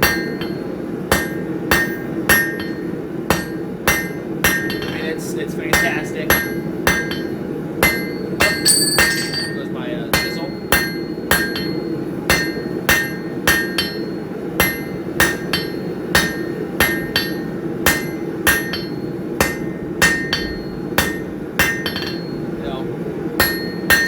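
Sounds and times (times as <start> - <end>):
hammer striking steel on anvil: 0.0 - 5.1, 5.7 - 22.5, 23.4 - 24.0.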